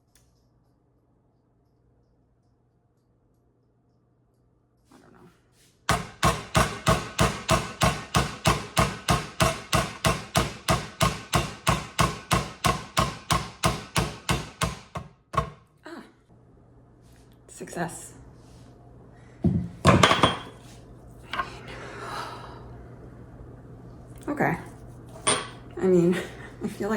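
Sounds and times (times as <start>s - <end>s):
rubber mallet striking metal: 5.9s - 15.6s.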